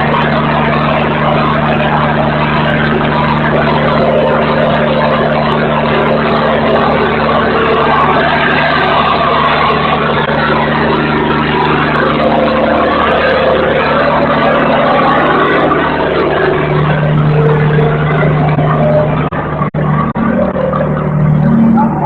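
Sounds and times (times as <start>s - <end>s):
constant low hum: 0.0s - 22.0s
diesel generator engine running: 0.0s - 22.0s.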